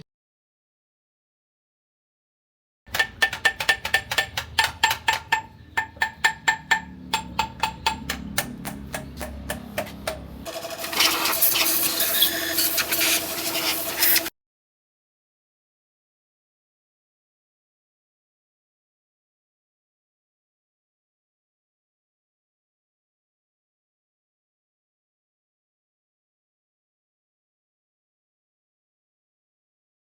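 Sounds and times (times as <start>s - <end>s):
hammering on metal: 2.9s - 10.4s.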